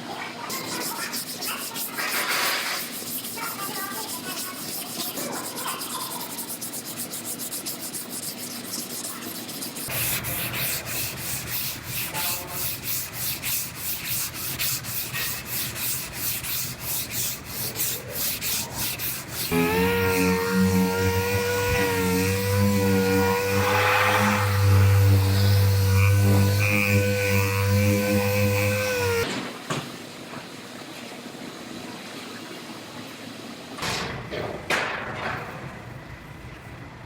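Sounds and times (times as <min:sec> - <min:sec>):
sandpaper strokes: 0:00.5 - 0:29.2
power tool whine: 0:19.0 - 0:29.3.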